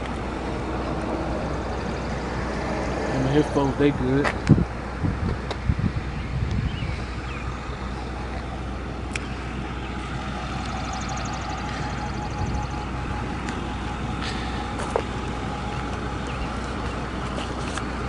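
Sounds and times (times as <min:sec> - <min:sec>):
engine low rumble: 0:00.0 - 0:18.0
steady hum: 0:05.6 - 0:18.0.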